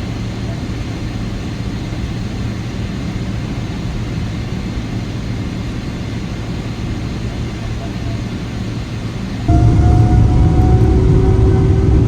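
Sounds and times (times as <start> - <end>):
airplane cabin engine hum: 9.5 - 12.0.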